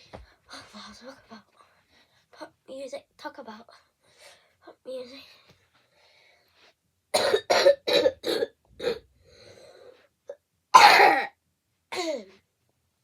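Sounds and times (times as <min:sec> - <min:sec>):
person coughing: 0:07.2 - 0:09.0, 0:10.8 - 0:11.3, 0:11.9 - 0:12.3.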